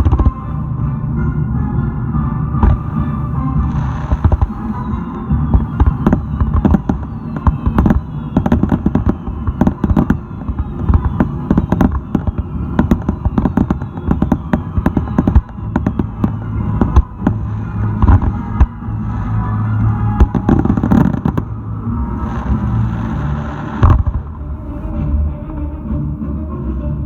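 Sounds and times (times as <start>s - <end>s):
fireworks bangs: 0.0s - 0.7s, 2.4s - 24.9s
falling whistle tones: 2.7s - 24.0s.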